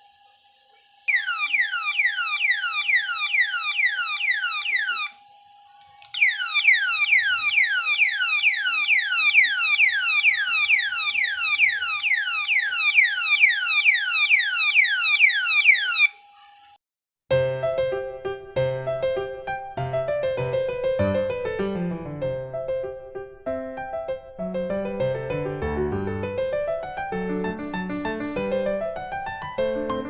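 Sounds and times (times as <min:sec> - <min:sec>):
alarm siren falling sweeps: 0:00.0 - 0:16.2.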